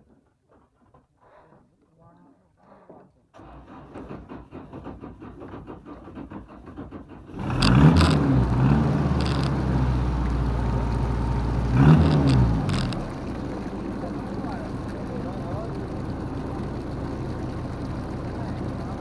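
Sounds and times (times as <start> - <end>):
boat engine running: 7.3 - 19.0.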